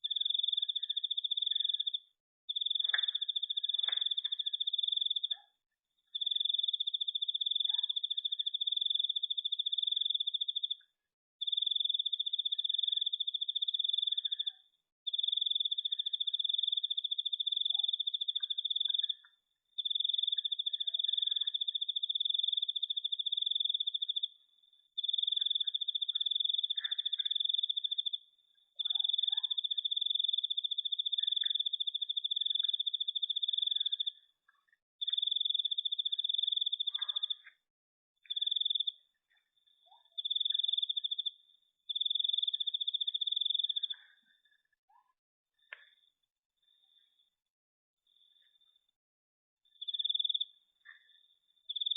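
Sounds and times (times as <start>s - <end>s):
cricket trilling: 25.0s - 28.2s, 28.8s - 34.3s, 35.0s - 37.5s, 38.3s - 39.0s, 40.0s - 44.0s, 49.7s - 50.6s, 51.2s - 51.9s.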